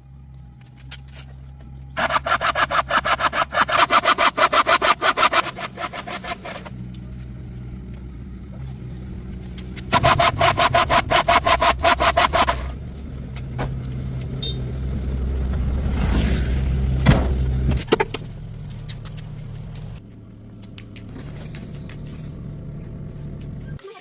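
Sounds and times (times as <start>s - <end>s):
car engine rumbling: 0.0s - 23.8s
rapid pulsing tones: 2.0s - 6.7s, 9.9s - 12.8s.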